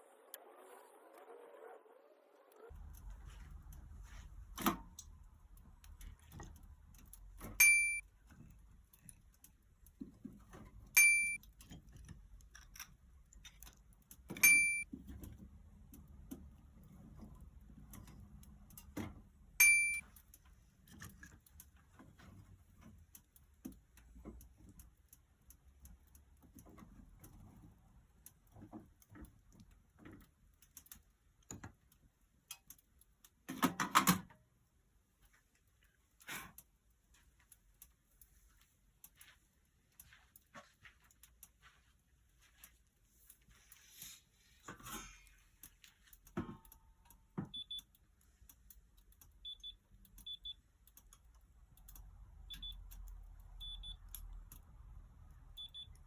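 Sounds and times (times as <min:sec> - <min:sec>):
loud electronic beeps: 0:19.6 - 0:20.0.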